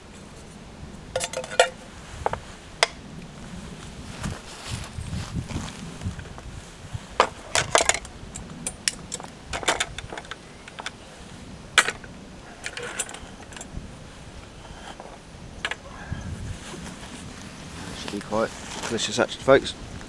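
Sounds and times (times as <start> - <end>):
utensil clinking against metal pot: 1.2 - 1.8.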